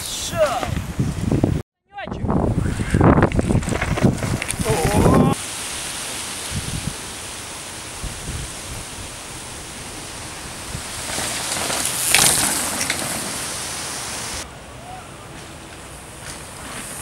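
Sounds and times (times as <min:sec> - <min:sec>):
wind on microphone: 0:00.0 - 0:05.4, 0:06.4 - 0:07.0, 0:07.8 - 0:11.4
bike tyres on dirt trail: 0:02.5 - 0:14.4, 0:15.3 - 0:17.0.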